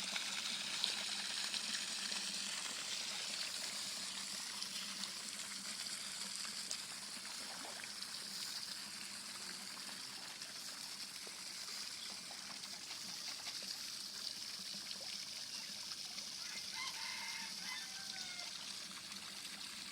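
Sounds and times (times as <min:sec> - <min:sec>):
water trickling and splashing: 0:00.0 - 0:19.9.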